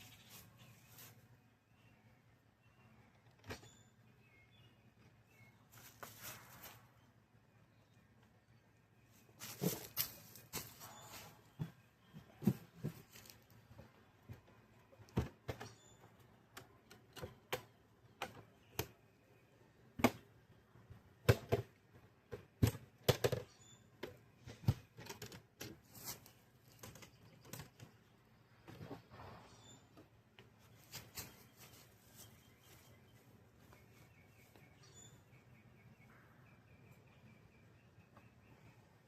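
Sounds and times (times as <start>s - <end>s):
hive boxes clacking and knocking: 11.5s - 19.0s, 21.2s - 25.9s.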